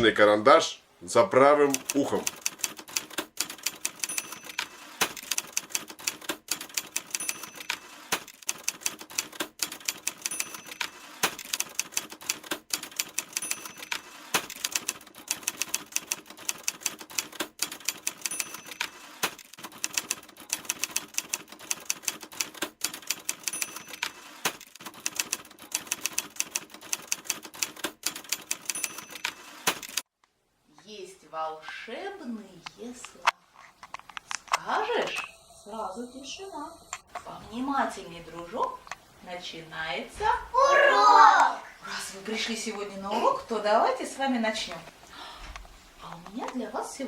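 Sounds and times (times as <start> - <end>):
typewriter key clacks: 1.7 - 30.0.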